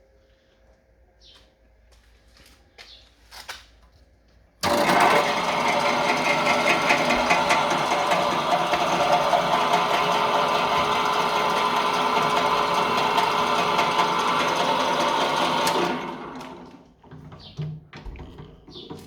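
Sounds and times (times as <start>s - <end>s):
motor winding down: 4.6s - 16.9s
drill press running: 4.6s - 17.4s.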